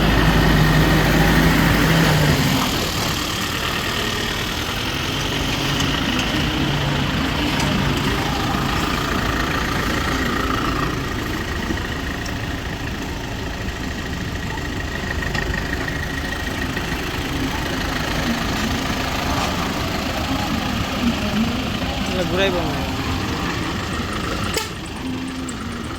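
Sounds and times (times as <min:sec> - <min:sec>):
heavy vehicle engine running: 0:00.0 - 0:25.9.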